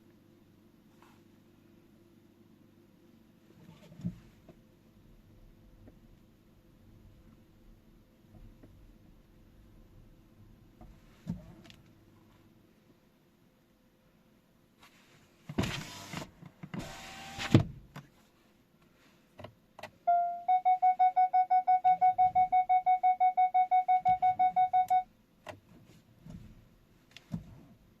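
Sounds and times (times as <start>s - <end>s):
electronic warning beeps: 20.1s - 25.1s.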